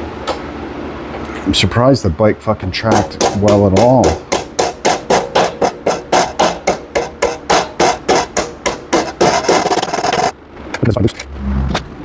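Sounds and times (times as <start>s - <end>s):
hand tool scraping strokes: 2.9s - 10.3s.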